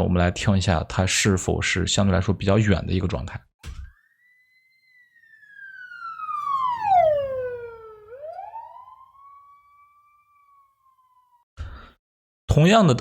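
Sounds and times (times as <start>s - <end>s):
police siren passing by: 3.9s - 11.4s.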